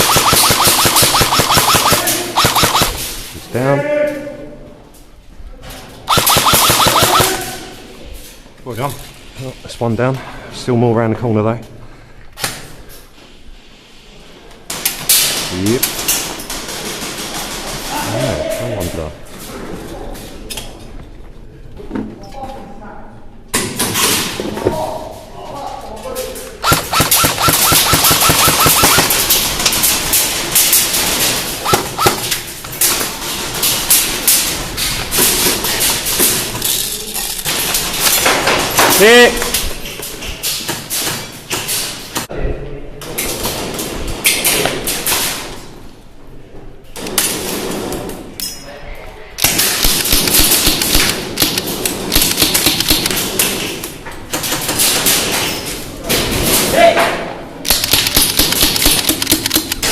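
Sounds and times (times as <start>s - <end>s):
airsoft guns firing: 0.0s - 3.3s, 6.1s - 7.6s, 26.6s - 34.6s, 49.4s - 55.4s, 57.6s - 59.9s.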